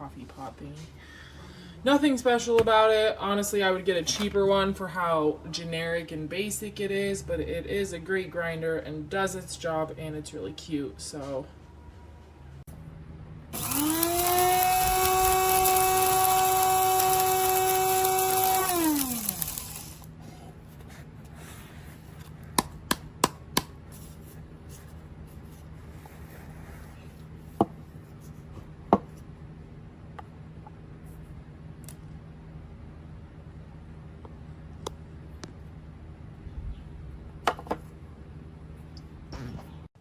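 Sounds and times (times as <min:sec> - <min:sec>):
coffee grinder motor whining: 0:13.5 - 0:20.2.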